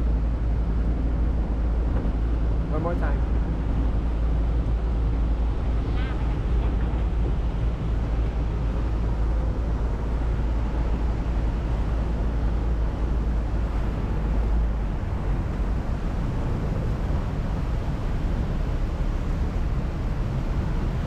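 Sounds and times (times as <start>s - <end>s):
boat motor: 0.0s - 21.0s
churning water: 0.0s - 21.0s
heavy low rumble: 0.0s - 21.0s
wind: 0.0s - 21.0s.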